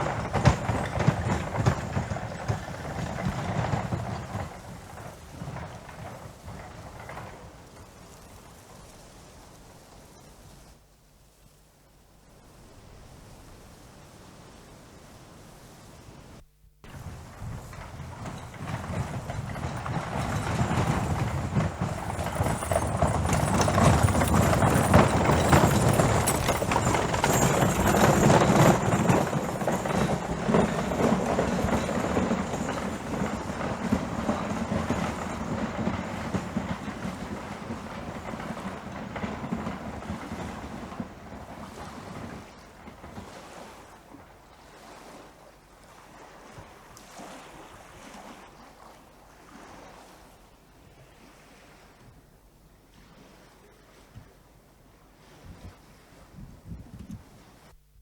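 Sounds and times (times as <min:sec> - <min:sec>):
horses' hooves clip-clopping: 0:00.0 - 0:10.0, 0:16.9 - 0:45.2.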